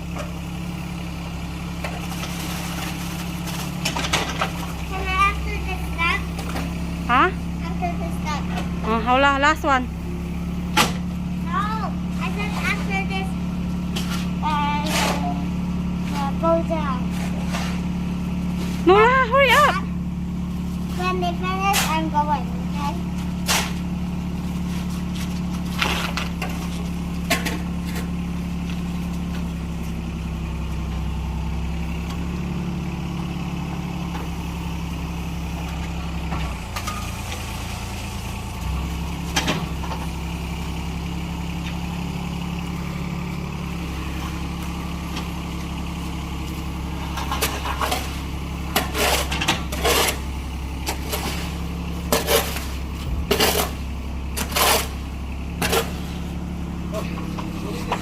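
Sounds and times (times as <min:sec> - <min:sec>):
concrete mixer engine running: 0:00.0 - 0:58.0
sharp knocks and scrapes: 0:13.9 - 0:15.4, 0:16.0 - 0:17.9, 0:23.2 - 0:23.9, 0:24.5 - 0:29.4, 0:47.1 - 0:56.4.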